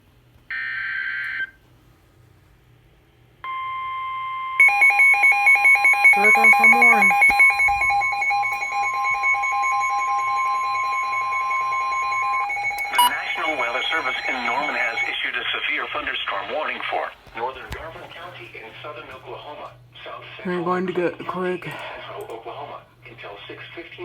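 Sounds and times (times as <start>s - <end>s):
rapidly pulsing alarm tone: 4.6s - 15.5s
steady long alert tone: 4.6s - 15.6s
electronic alert burst: 6.1s - 15.2s.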